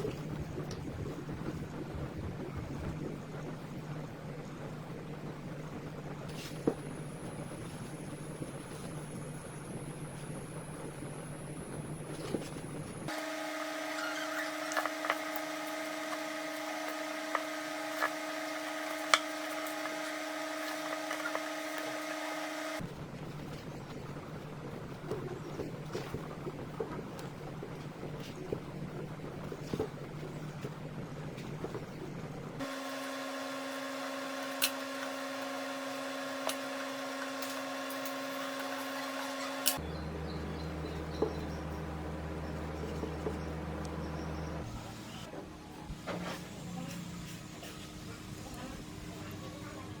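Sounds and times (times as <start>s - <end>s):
power tool high hum: 13.1s - 22.8s, 32.6s - 39.8s.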